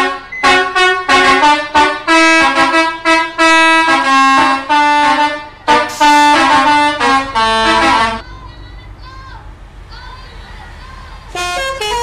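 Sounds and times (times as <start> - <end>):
multi-tone musical air horn: 0.0 - 8.2, 11.3 - 12.0.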